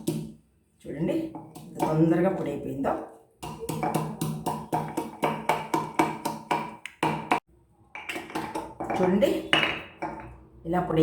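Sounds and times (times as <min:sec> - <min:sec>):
pestle pounding spices in mortar: 0:00.0 - 0:00.4, 0:01.4 - 0:02.2, 0:03.4 - 0:07.4, 0:08.0 - 0:10.3.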